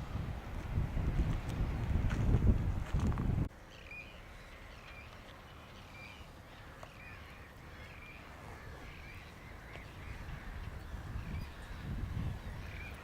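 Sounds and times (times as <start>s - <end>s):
birds calling: 3.5s - 13.0s.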